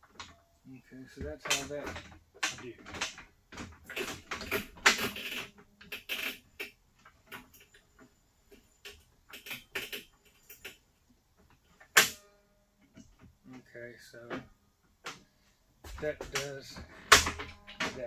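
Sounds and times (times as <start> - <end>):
metal parts clicking and rattling: 1.2 - 13.4, 15.8 - 18.0.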